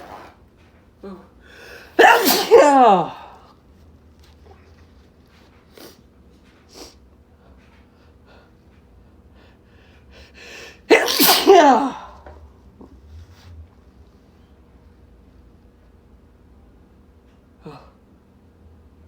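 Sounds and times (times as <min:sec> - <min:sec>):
faint breathing: 0:01.4 - 0:02.0
man sneezing loudly: 0:02.0 - 0:03.4, 0:10.8 - 0:12.2.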